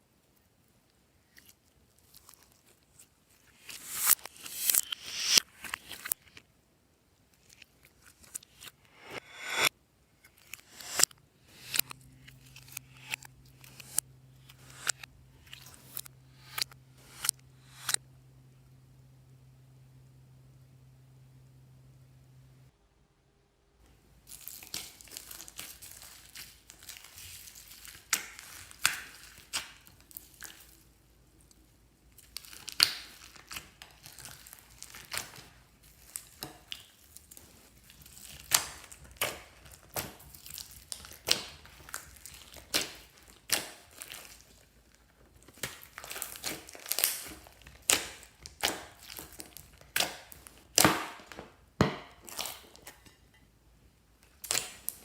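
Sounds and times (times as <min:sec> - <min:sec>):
slime squishing and popping: 0:32.2 - 0:44.6, 0:45.4 - 0:51.4, 0:54.4 - 0:55.0.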